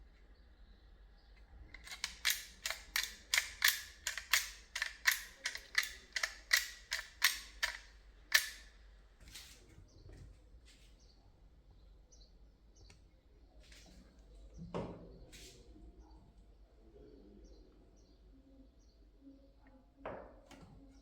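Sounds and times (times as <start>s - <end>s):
rapid sharp clicks: 1.7s - 8.7s.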